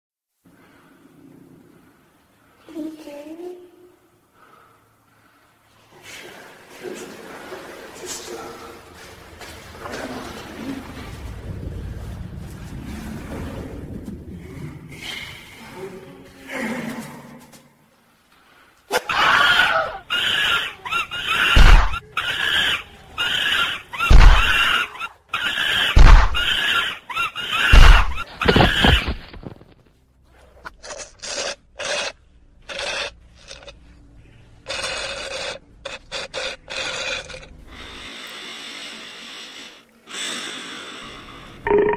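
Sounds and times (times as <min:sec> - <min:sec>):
high-pitched squealing cries: 0:18.9 - 0:29.2
heavy thuds: 0:21.6 - 0:22.0, 0:24.1 - 0:24.7, 0:26.0 - 0:26.5, 0:27.7 - 0:29.7.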